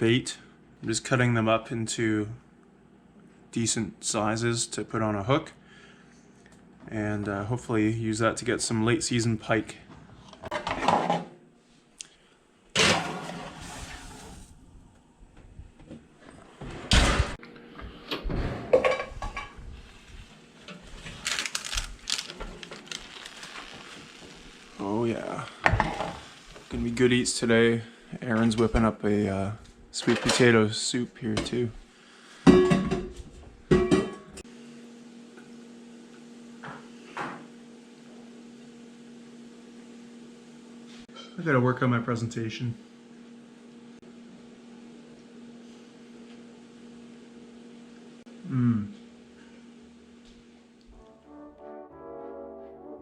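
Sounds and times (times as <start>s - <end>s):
pots and pans clanking: 12.8s - 14.0s, 18.6s - 19.6s, 32.4s - 34.4s.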